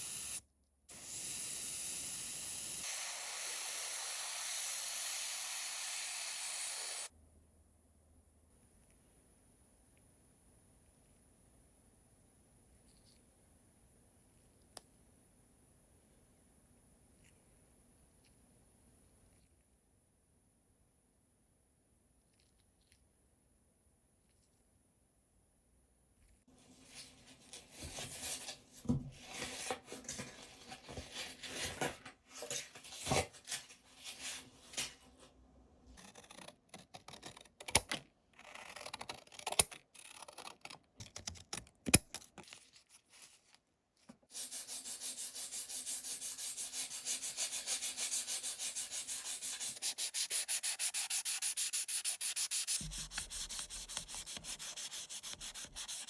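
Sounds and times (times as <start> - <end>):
sanding small metal part: 44.4 - 56.0.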